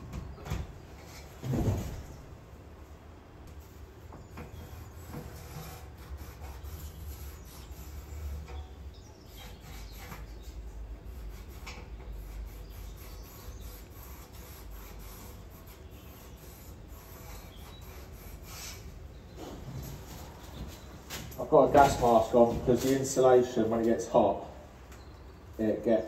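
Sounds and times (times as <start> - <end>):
scraping and rubbing: 4.4 - 23.2.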